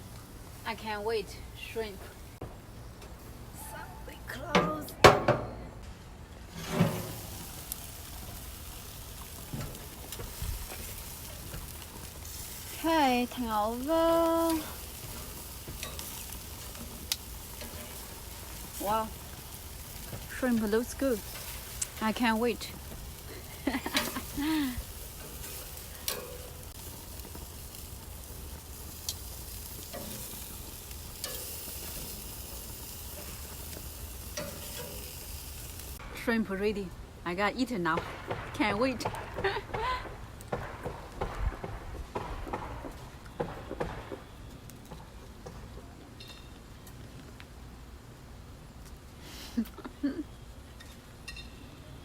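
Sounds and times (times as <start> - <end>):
shrimp and chicken wings sizzling: 0.0 - 41.2, 42.1 - 52.0.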